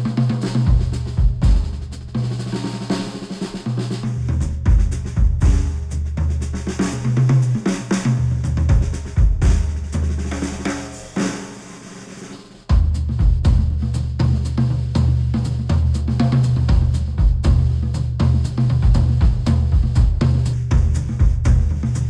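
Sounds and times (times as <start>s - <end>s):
drum kit beat: 0.0s - 22.0s
bass line: 4.2s - 6.6s, 8.2s - 10.2s, 12.7s - 22.0s.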